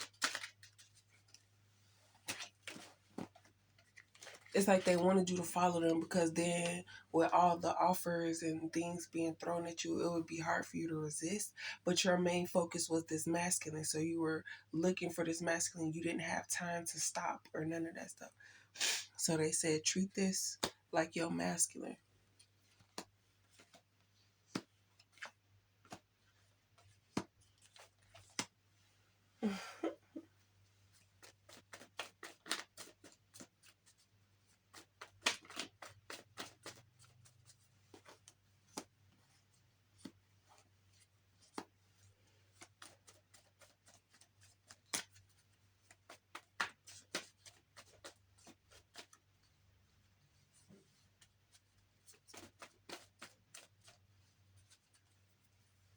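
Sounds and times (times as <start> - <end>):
cards shuffling clicks: 0.0 - 1.3, 31.2 - 33.7, 34.7 - 38.9
cards rustling: 0.0 - 5.2, 22.4 - 28.6, 30.9 - 49.2, 50.9 - 55.1.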